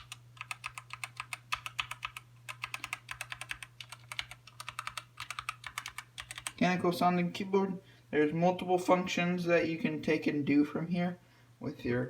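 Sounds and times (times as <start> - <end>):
mechanical keyboard typing: 0.0 - 6.6.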